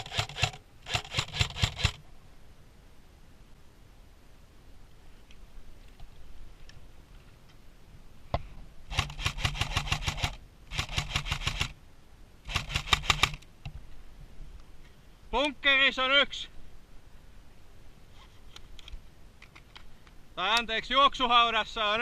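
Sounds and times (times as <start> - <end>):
airsoft rifle firing: 0.0 - 2.0, 8.9 - 11.8, 12.5 - 13.4.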